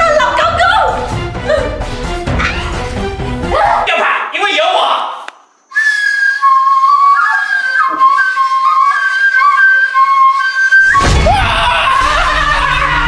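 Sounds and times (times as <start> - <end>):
flute-like melody: 5.7 - 13.0.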